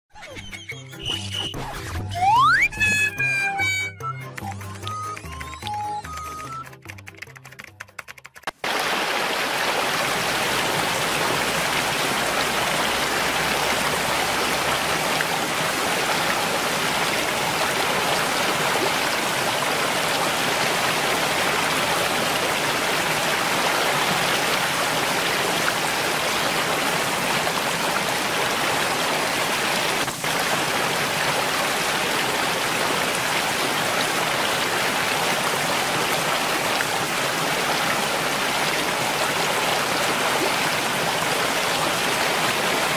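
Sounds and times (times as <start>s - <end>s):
stream water rushing: 8.6s - 42.9s.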